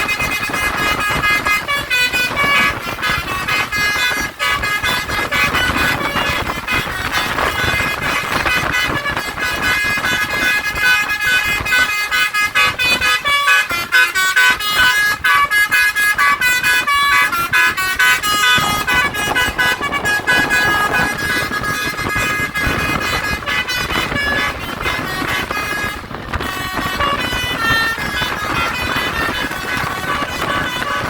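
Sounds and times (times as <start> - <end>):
bus horn playing a tune: 0.0 - 31.0
noisy rumble: 16.6 - 25.2.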